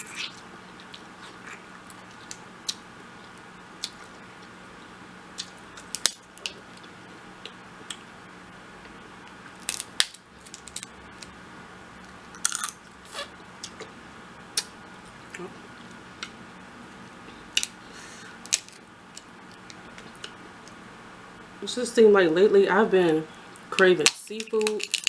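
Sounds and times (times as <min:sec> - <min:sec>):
chewing and cracking shellfish: 0:09.6 - 0:11.3, 0:12.3 - 0:12.9, 0:23.6 - 0:25.0.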